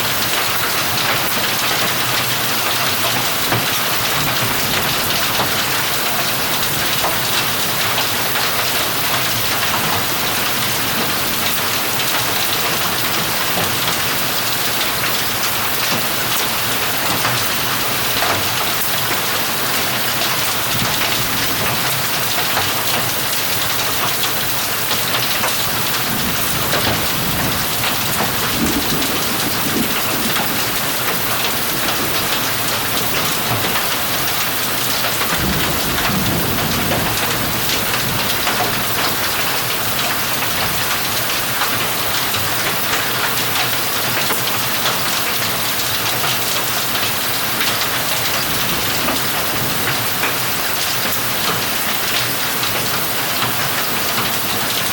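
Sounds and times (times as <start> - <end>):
heavy rain pelting down: 0.0 - 54.9
low thunder rumbling: 3.1 - 42.0, 47.4 - 51.8.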